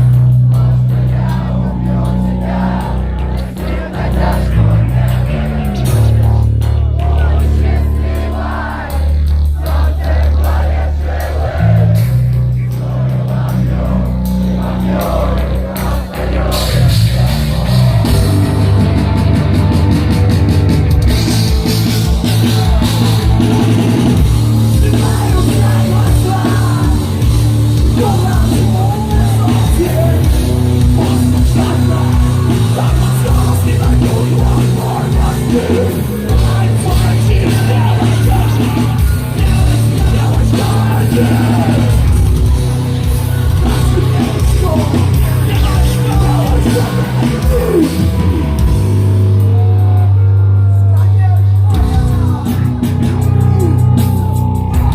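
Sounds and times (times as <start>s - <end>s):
rock band playing live: 0.0s - 54.9s
person singing: 22.2s - 42.1s, 43.4s - 48.6s.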